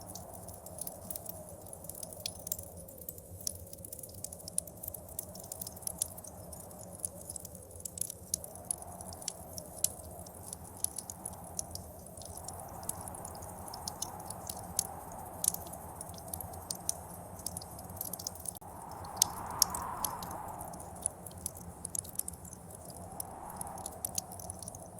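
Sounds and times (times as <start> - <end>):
wood fire crackling and popping: 0.0 - 24.9
howling blizzard wind: 8.3 - 24.9.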